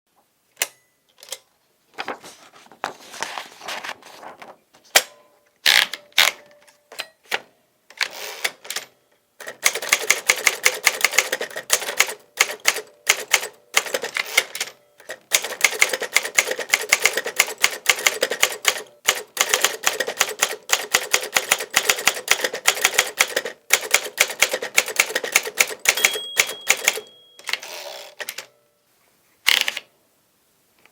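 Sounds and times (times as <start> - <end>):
typewriter keys clacking: 8.4 - 28.5
typewriter bell ringing: 25.6 - 28.6.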